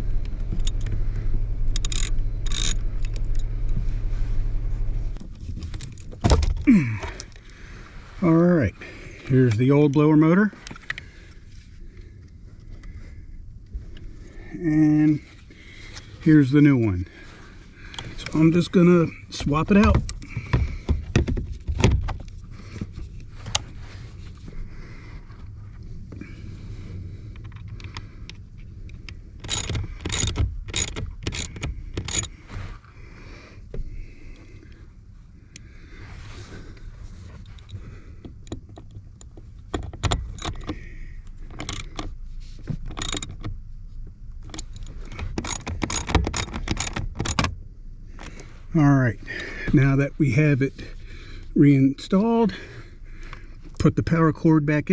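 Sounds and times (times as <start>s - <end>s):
hand tools and metal parts clinking: 1.7s - 3.4s, 23.4s - 23.6s
knocks of motor being handled: 23.5s - 23.7s.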